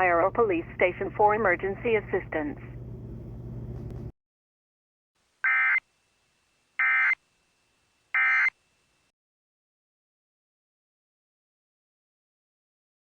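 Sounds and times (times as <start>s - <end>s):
digital data tone bursts: 6.8s - 7.2s, 8.2s - 8.6s.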